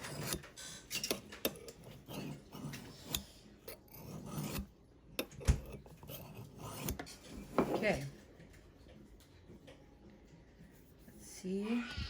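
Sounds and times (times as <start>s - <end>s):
blade clicking on ceramic: 0.0s - 7.2s
knife scraping ceramic mug: 0.0s - 8.0s.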